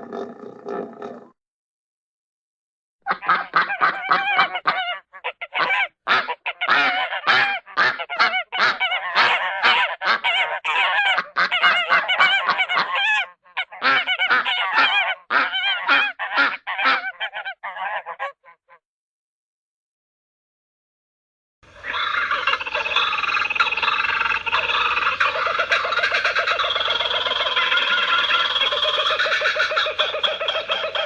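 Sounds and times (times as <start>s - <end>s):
geese honking: 3.1s - 13.0s, 13.6s - 17.6s, 21.7s - 31.0s.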